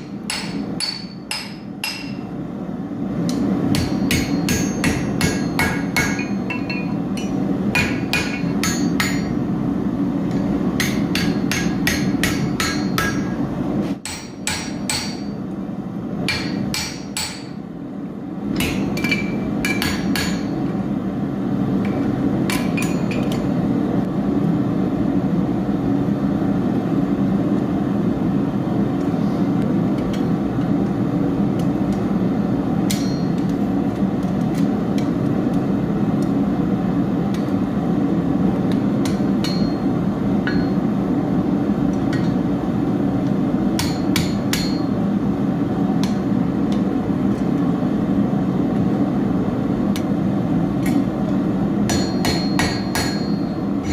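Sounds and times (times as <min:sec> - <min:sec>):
hammer striking steel on anvil: 0:00.0 - 0:02.3, 0:03.3 - 0:09.4, 0:10.3 - 0:13.4, 0:14.0 - 0:15.4, 0:16.2 - 0:17.6, 0:18.5 - 0:20.6, 0:22.5 - 0:23.5, 0:32.9 - 0:33.5, 0:39.0 - 0:40.9, 0:43.8 - 0:45.0, 0:51.8 - 0:53.9.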